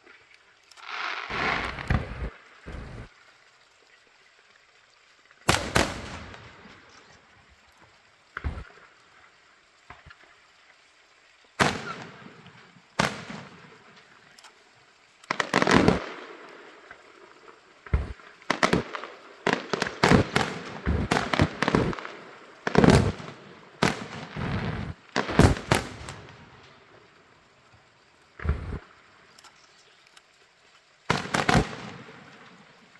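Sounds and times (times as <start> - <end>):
fireworks bursting: 0.8 - 3.1, 5.5 - 7.7, 8.4 - 9.0, 11.6 - 14.6, 15.2 - 29.5, 31.1 - 32.9.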